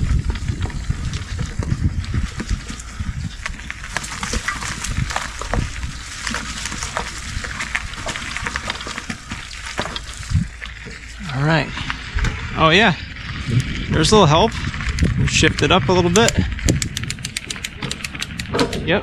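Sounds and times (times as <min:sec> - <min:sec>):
bike tyres rattling over dirt: 0:00.0 - 0:19.0
wind rumbling on microphone: 0:00.0 - 0:19.0.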